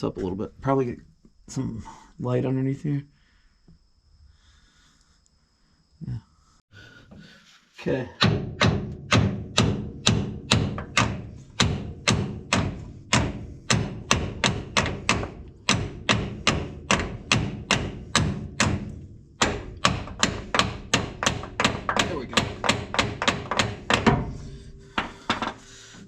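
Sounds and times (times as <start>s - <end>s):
hammer striking metal: 8.2s - 25.8s.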